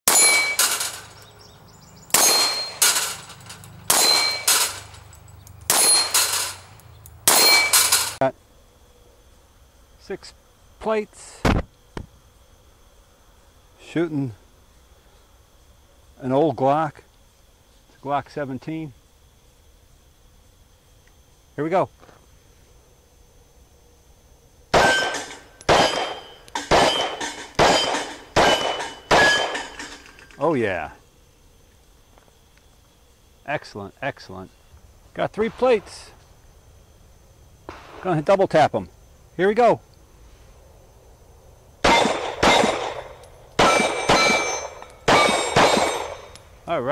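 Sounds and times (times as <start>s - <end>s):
steel plates clanging: 0.1s - 1.2s, 2.1s - 6.7s, 7.3s - 8.2s, 43.6s - 46.3s
pistol shots: 2.1s - 3.2s, 3.9s - 4.9s, 5.7s - 6.6s, 7.3s - 8.2s, 24.7s - 29.8s, 41.8s - 46.4s.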